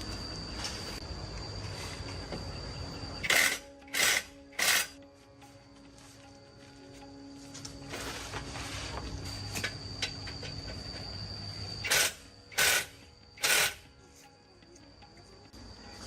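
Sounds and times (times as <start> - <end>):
background music: 3.2 - 8.8.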